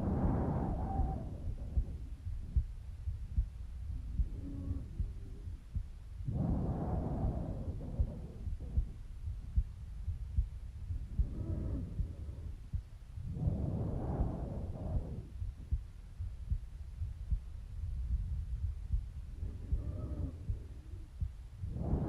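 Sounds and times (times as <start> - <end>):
heartbeat thumping: 0.0 - 22.0
breath sounds: 3.9 - 9.6, 10.4 - 15.8, 18.1 - 22.0.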